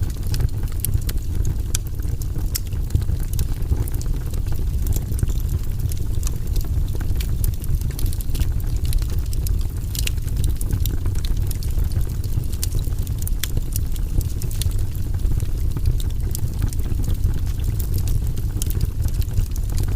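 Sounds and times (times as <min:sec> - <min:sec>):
campfire crackling and popping: 0:00.0 - 0:19.9
low rumble of fire: 0:00.0 - 0:19.9.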